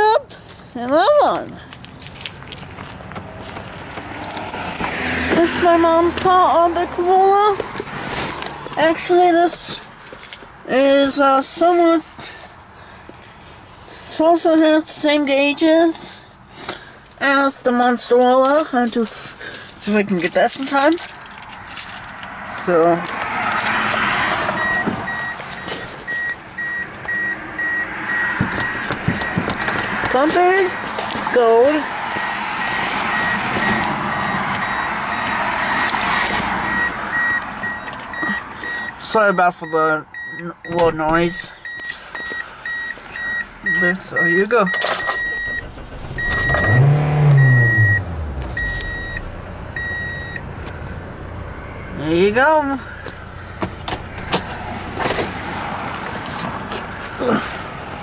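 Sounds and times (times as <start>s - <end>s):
car engine revving: 2.6s - 8.8s, 26.6s - 39.0s, 43.2s - 51.9s
car warning chime beeping: 23.8s - 50.6s.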